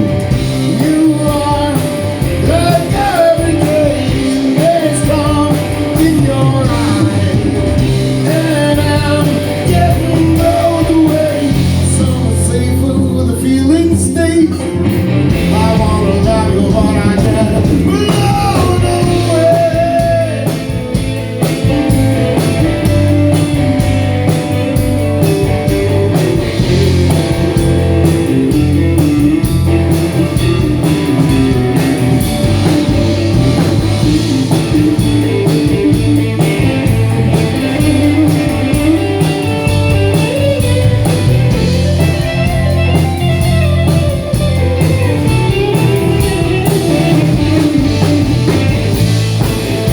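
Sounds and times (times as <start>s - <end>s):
person singing: 0.0s - 20.9s
bass: 0.0s - 49.9s
drums: 0.0s - 49.9s
electric guitar: 0.0s - 49.9s.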